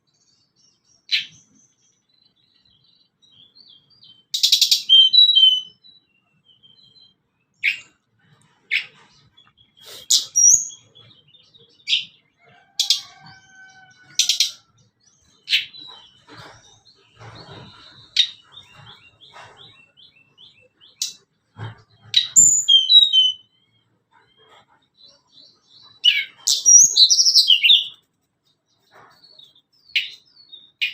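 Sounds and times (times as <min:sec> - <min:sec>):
bird chirps and whistles: 0:04.5 - 0:05.8, 0:22.2 - 0:23.5.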